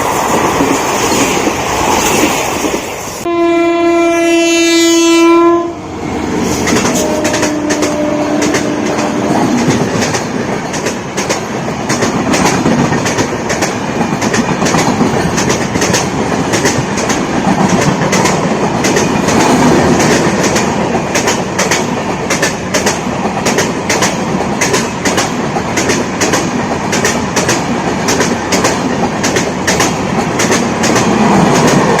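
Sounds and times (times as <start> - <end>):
train coaches rumbling: 0.0 - 32.0
low train horn: 3.2 - 9.8
wheels clickety-clack: 6.6 - 32.0.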